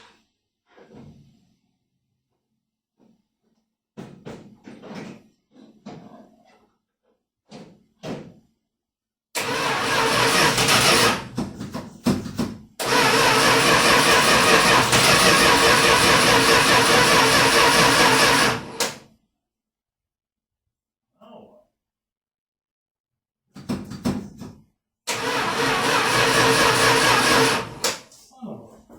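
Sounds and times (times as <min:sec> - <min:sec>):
starter cranking engine: 0:09.4 - 0:11.3, 0:12.8 - 0:19.0, 0:25.1 - 0:28.0.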